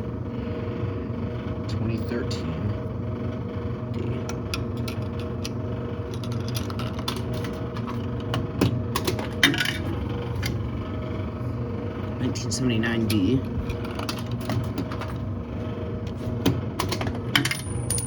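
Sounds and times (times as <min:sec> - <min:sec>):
steady low hum: 0:00.0 - 0:18.0
coins clinking in machine: 0:16.8 - 0:18.0.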